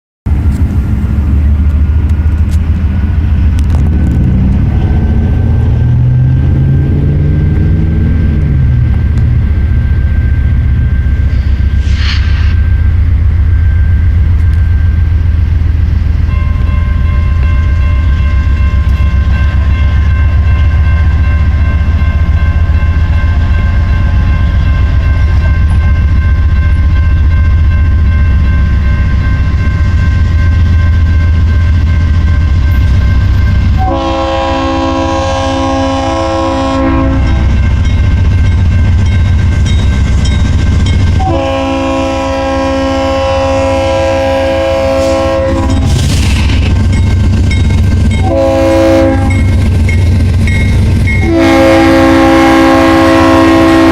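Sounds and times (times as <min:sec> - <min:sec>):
diesel locomotives rumbling: 0:00.2 - 0:53.9
multi-chime air horn: 0:33.8 - 0:37.6, 0:41.2 - 0:45.9, 0:48.2 - 0:49.6, 0:51.2 - 0:53.9.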